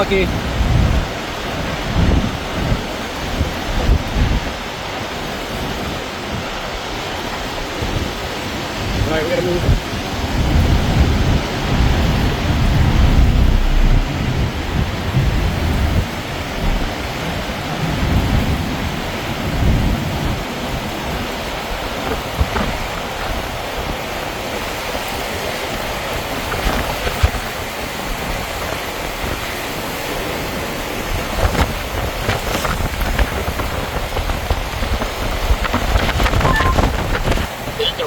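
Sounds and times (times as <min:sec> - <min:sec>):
rain: 0:00.0 - 0:38.0
storm wind gusts: 0:00.0 - 0:38.0.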